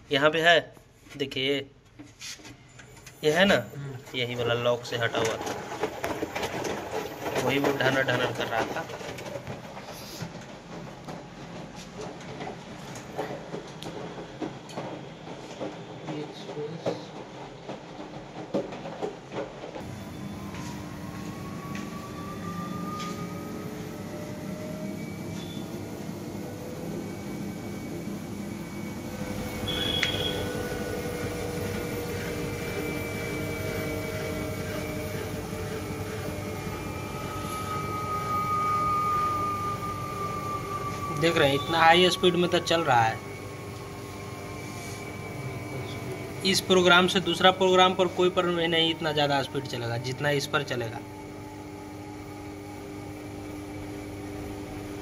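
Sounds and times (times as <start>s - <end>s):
washing machine drum spinning: 2.8s - 55.0s
brief high tone: 19.9s - 26.3s, 28.6s - 35.2s, 36.1s - 43.3s.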